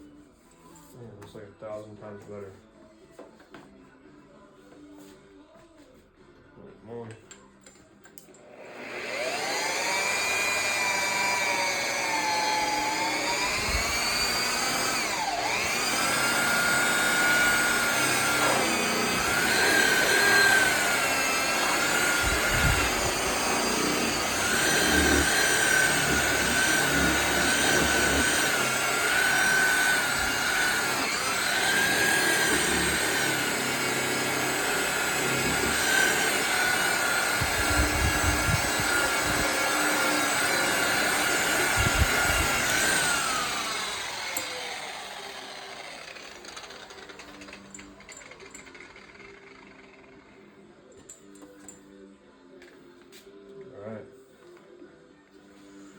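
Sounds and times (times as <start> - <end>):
electric buffer whining: 8.4 - 50.3.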